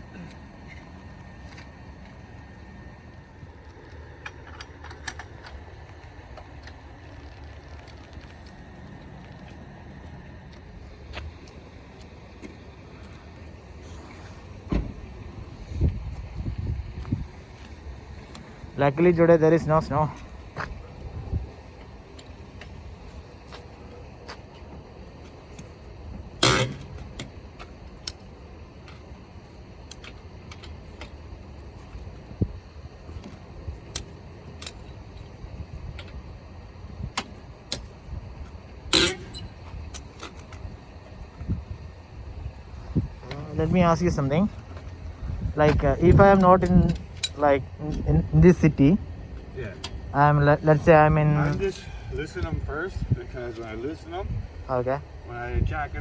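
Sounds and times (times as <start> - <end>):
vehicle engine idling: 0.0 - 56.0
light metallic clicks and rattles: 45.6 - 48.1
metallic tool clicks and clinks: 46.4 - 47.4.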